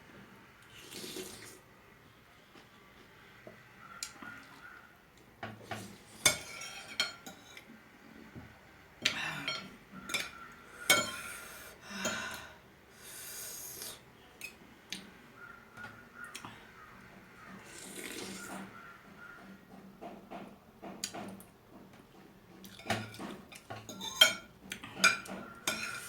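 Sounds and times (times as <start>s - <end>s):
noodle slurping: 0.6s - 1.6s, 17.6s - 18.7s
cutlery clicking on dish: 9.1s - 11.2s, 22.6s - 26.0s.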